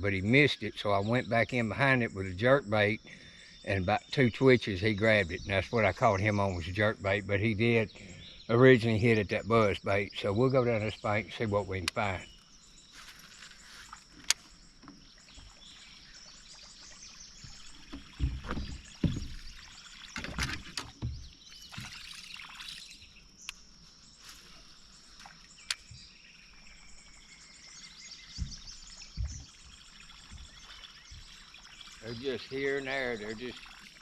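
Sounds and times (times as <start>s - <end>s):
bird calls: 0.0s - 34.0s
water splashing: 13.1s - 21.0s, 21.6s - 23.0s, 28.4s - 34.0s
knocks: 17.9s - 19.4s.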